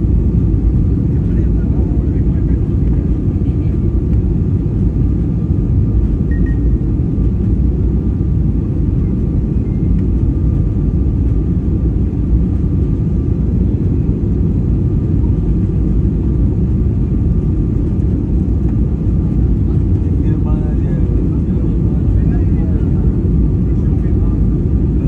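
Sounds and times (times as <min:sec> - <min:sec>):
airliner cabin rumble: 0:00.0 - 0:25.0
faint steady whine: 0:06.2 - 0:07.7.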